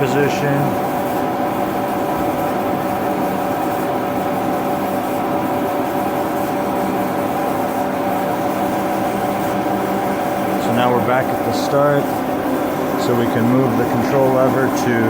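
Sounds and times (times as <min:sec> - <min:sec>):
band saw machine hum: 0:00.0 - 0:01.0, 0:09.0 - 0:15.0
steady machine whine: 0:00.0 - 0:15.0.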